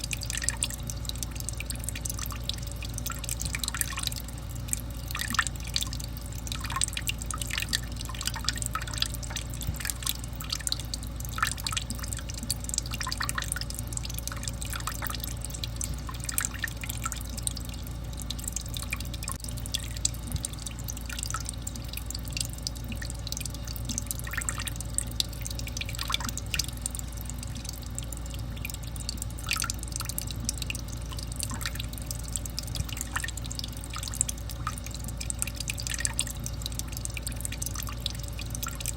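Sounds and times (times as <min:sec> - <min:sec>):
steady low hum: 0:00.0 - 0:38.9
water dripping and splashing: 0:00.0 - 0:38.9.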